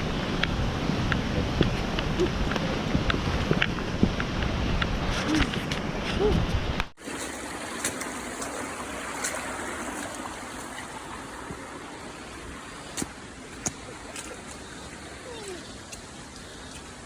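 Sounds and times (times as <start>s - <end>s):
wind rumbling on microphone: 0.0s - 17.0s
mountain stream rushing: 7.0s - 17.0s.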